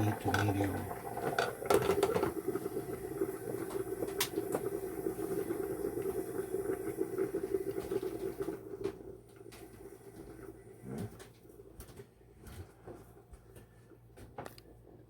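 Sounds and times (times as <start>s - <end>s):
water boiling hard: 0.0s - 11.7s.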